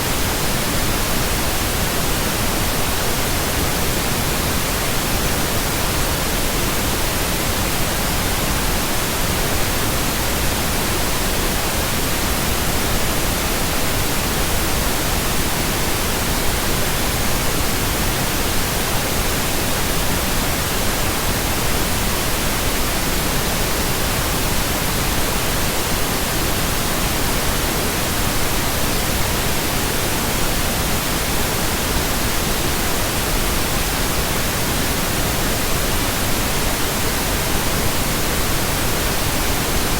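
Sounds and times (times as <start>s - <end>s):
pink noise hiss: 0.0s - 39.9s.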